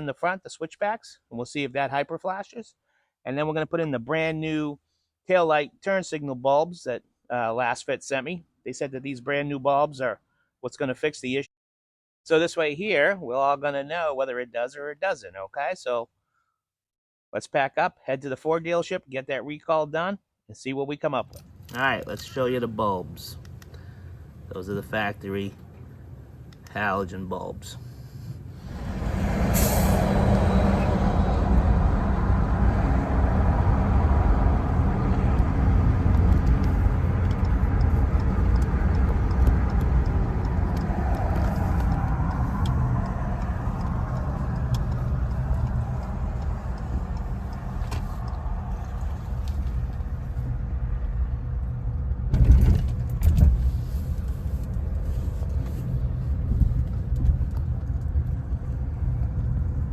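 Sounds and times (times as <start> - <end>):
pickup engine and road noise: 21.3 - 59.9
vehicle bump: 52.1 - 54.3.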